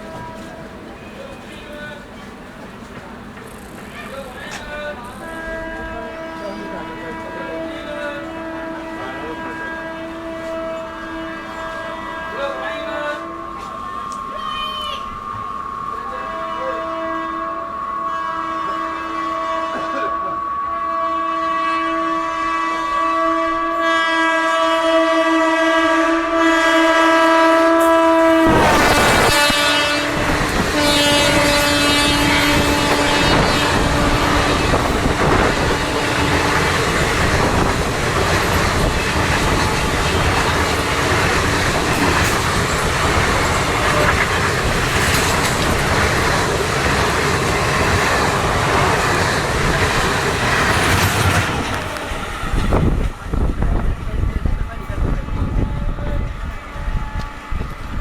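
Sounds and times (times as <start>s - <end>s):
train horn sounding: 0.0s - 1.3s, 3.4s - 58.0s
train wheels rattling on rails: 0.0s - 24.8s, 26.9s - 58.0s.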